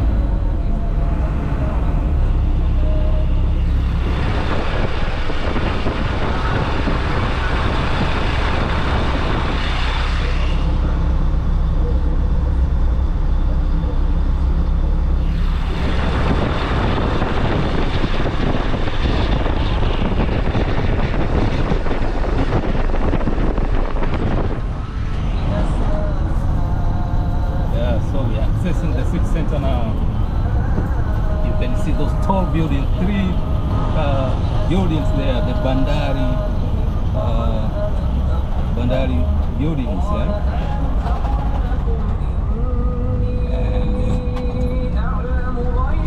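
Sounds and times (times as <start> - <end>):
vehicle engine rumble: 0.0 - 46.0
tyre and wind noise: 3.4 - 11.2, 15.0 - 26.6.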